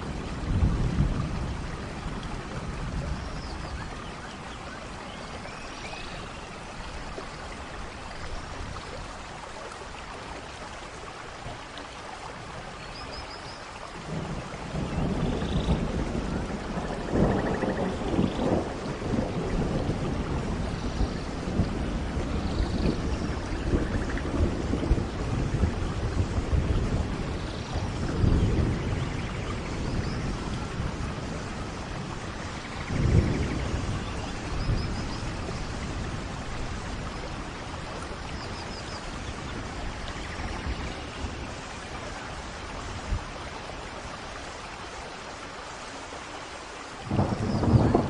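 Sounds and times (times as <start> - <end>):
low rolling thunder: 0.0 - 4.0, 14.0 - 44.2, 47.0 - 48.0
steady rain: 0.0 - 48.0.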